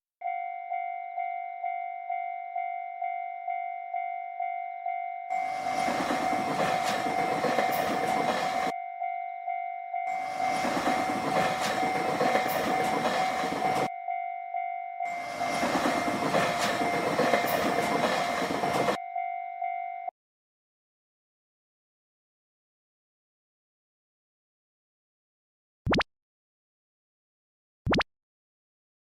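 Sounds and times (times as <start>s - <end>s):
railroad crossing bell dinging: 0.2s - 20.1s
train wheels rumbling: 5.4s - 8.7s, 10.1s - 13.9s, 15.1s - 19.0s.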